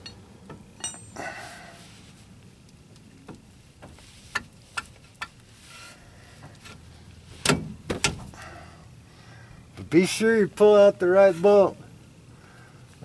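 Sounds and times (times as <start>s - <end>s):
metallic clinks of tools: 0.8s - 1.2s.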